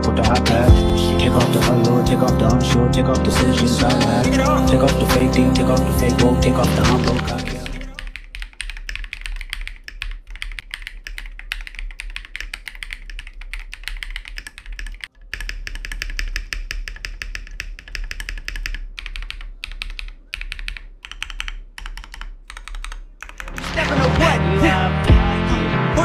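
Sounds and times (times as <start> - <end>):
mechanical keyboard typing: 3.4 - 23.9.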